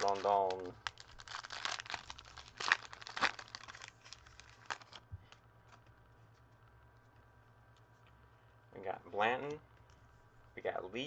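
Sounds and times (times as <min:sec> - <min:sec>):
foil wrapper tearing and crinkling: 0:00.0 - 0:05.0.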